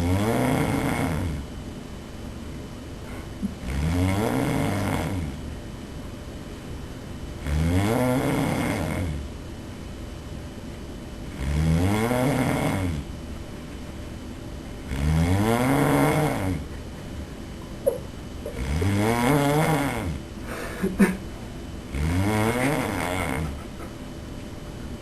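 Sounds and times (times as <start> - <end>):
person snoring loudly: 0.0 - 1.4, 3.4 - 5.4, 7.4 - 9.2, 11.3 - 13.0, 14.9 - 16.7, 18.5 - 20.2, 21.9 - 23.6.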